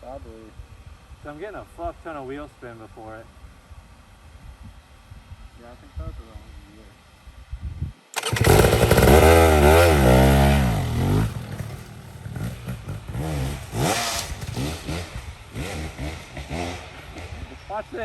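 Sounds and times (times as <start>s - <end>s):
dirt bike engine revving: 8.2s - 17.9s.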